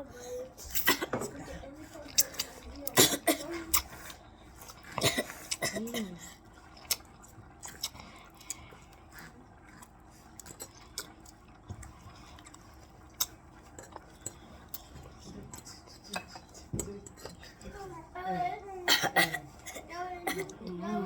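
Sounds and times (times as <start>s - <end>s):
person chewing food: 0.5s - 18.0s
cough-like burst: 3.0s - 3.5s, 5.0s - 6.1s, 18.9s - 20.5s.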